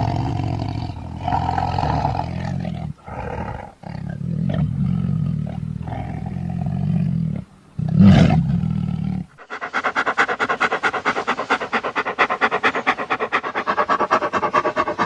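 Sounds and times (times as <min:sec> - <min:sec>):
low animal roar: 0:00.0 - 0:09.5
rapid rhythmic rattling call: 0:09.4 - 0:15.0.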